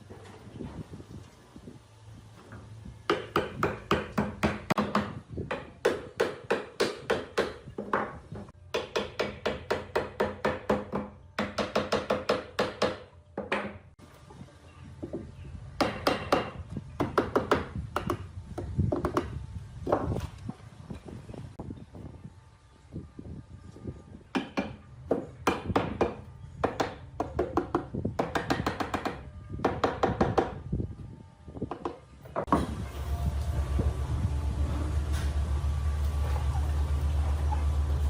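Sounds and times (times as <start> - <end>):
hammering on wood: 3.1 - 13.8, 15.0 - 19.3, 24.3 - 30.6.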